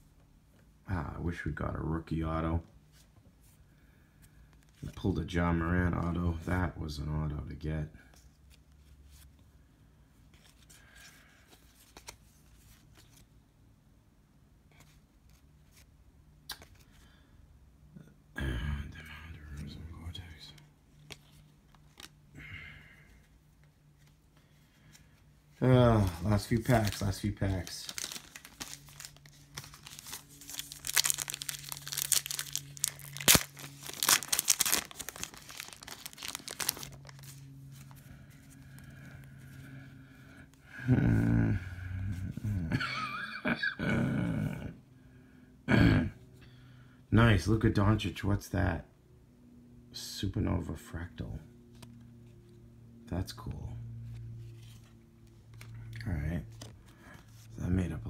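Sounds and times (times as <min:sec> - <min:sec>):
low steady hum: 0:00.0 - 0:58.0
trading cards clicking and rustling: 0:21.0 - 0:22.2, 0:25.8 - 0:38.9.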